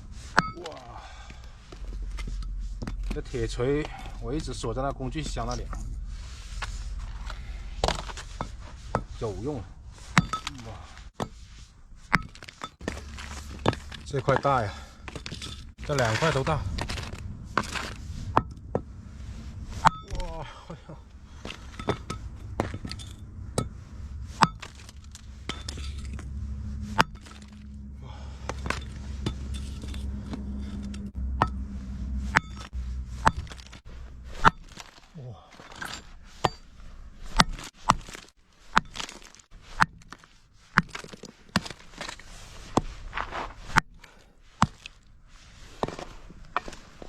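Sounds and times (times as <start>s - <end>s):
low rumble: 0.0s - 37.7s
hammer smashing coal: 10.1s - 11.4s, 32.3s - 36.7s, 37.3s - 44.0s
coal chunks clinking: 12.1s - 18.4s, 32.4s - 42.2s.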